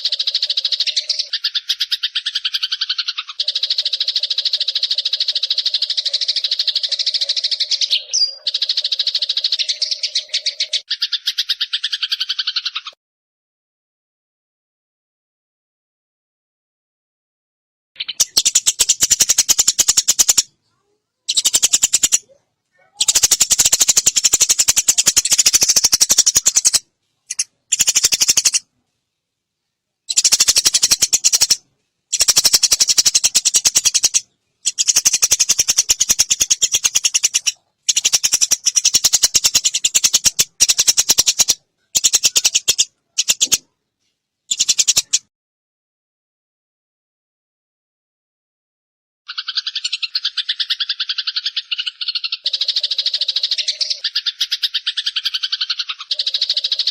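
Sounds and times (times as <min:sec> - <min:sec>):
sparrow chattering rattles: 0:00.0 - 0:12.9, 0:18.0 - 0:20.5, 0:21.3 - 0:28.7, 0:30.1 - 0:43.7, 0:44.5 - 0:45.3, 0:49.3 - 0:56.9.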